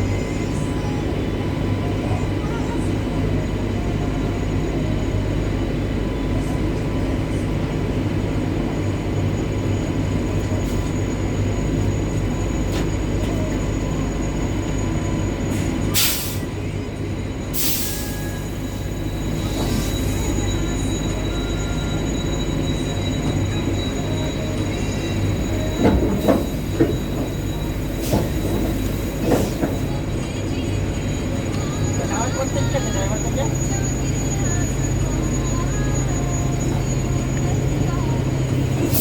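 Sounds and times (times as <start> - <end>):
train rumbling on rails: 0.0 - 39.0.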